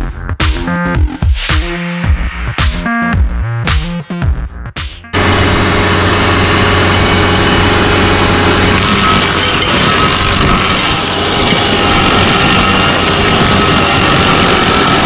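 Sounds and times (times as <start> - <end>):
engine running loudly: 5.1 - 15.0.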